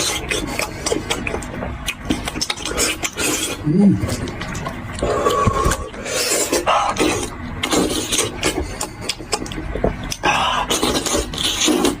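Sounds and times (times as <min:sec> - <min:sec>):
person chewing and gnawing: 0:00.0 - 0:12.0.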